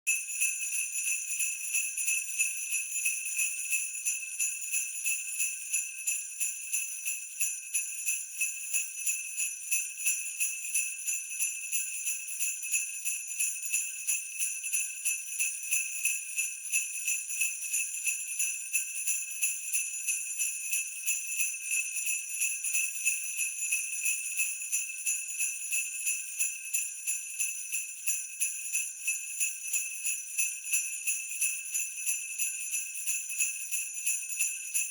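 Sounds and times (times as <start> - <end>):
sleigh bells shaken: 0.1 - 34.9.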